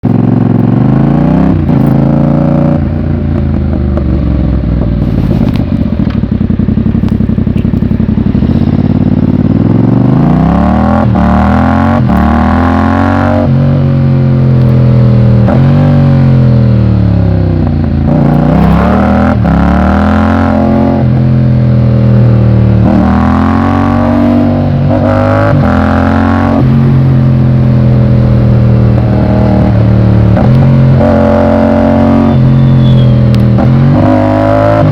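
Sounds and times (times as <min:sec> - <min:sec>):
motorcycle engine accelerating: 0:00.0 - 0:34.9.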